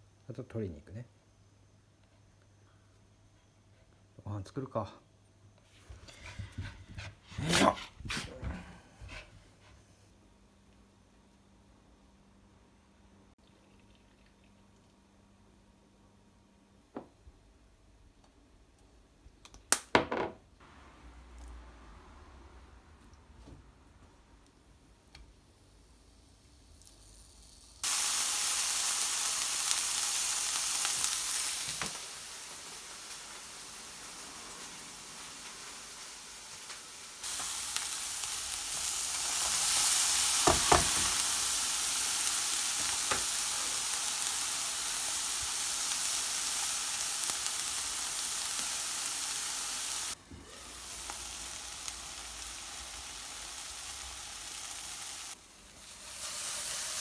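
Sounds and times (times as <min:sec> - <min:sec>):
food sizzling in a pan: 0:25.5 - 0:57.0.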